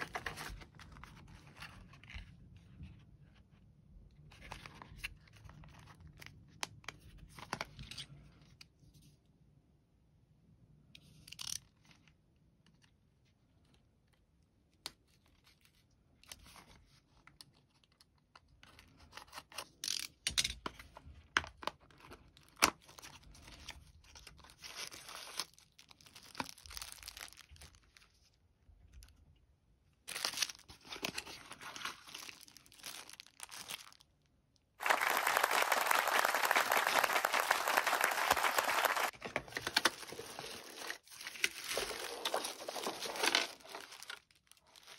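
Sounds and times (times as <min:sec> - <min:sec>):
packaging rustling and tearing: 0:00.0 - 0:01.0, 0:30.1 - 0:34.0, 0:34.8 - 0:44.9
packaging clicks: 0:34.8 - 0:44.2.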